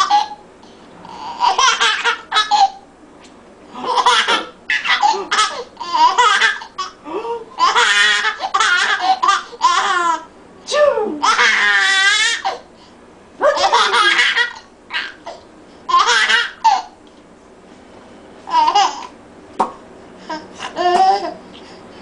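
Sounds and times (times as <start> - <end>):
baby laughing: 0.0 - 0.4, 1.1 - 2.8, 3.8 - 10.3, 11.2 - 12.7, 13.4 - 17.0, 18.5 - 19.2, 20.3 - 21.4.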